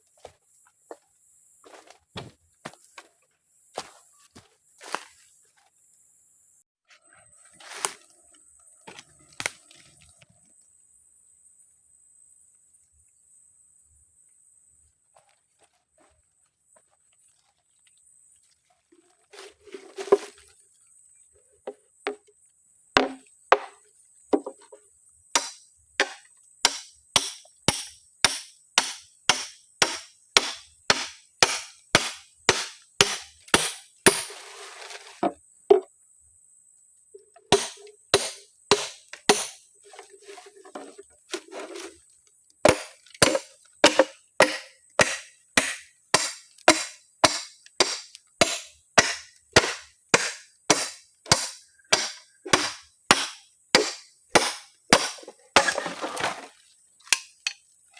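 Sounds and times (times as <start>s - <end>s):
scraping and handling: 15.2s - 20.6s, 34.2s - 35.9s, 39.8s - 44.0s
hand tool knocking on wood: 23.0s - 24.7s, 42.7s - 55.7s.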